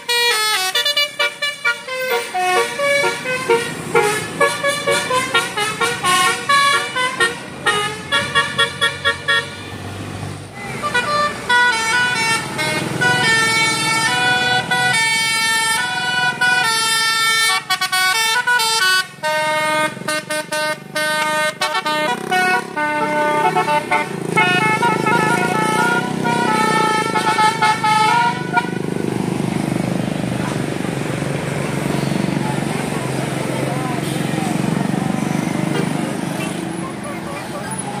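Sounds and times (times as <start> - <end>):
musical air horn melody: 0.1 - 9.6, 10.6 - 28.8.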